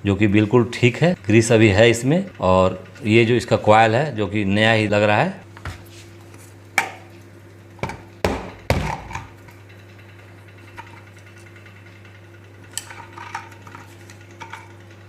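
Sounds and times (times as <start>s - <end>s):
steady low hum: 0.0s - 15.0s
metal parts clanking: 12.7s - 14.8s.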